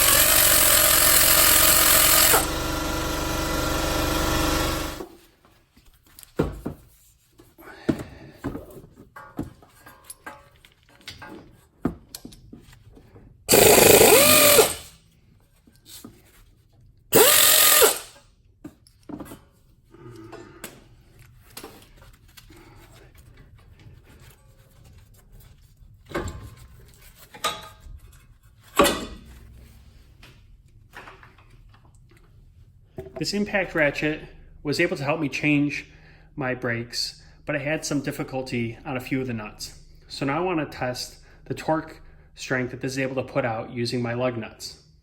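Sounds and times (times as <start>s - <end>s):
pneumatic impact ratchet whining: 0.0s - 5.0s, 13.5s - 15.0s, 17.1s - 18.2s.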